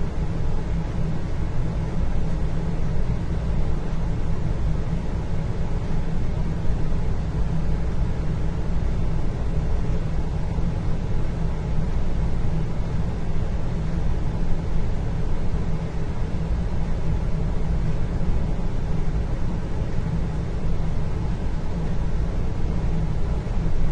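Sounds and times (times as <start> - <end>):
faint hum: 0.0 - 23.9
low indoor rumble: 0.0 - 23.9.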